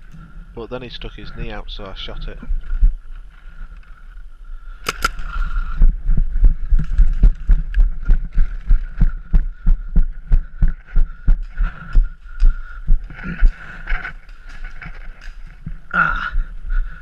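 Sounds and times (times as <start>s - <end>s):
sharp cracks: 4.7s - 5.8s.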